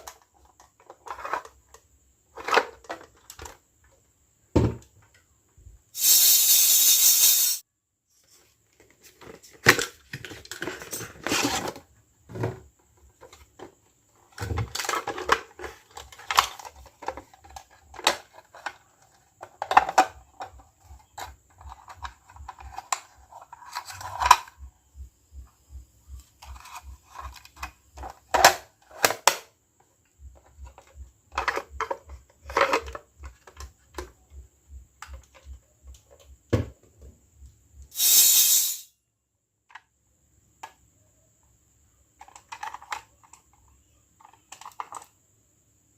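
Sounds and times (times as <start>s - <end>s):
plastic toy pieces handled: 0.0s - 3.6s, 13.1s - 24.6s, 42.2s - 45.2s.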